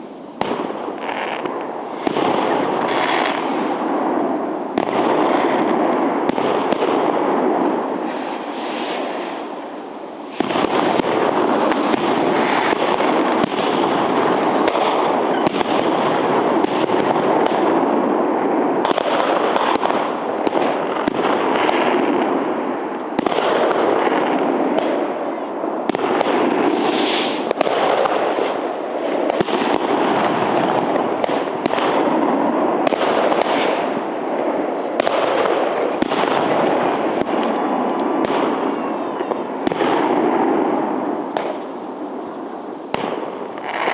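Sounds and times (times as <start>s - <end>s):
fireworks crackling and banging: 0.0s - 43.9s.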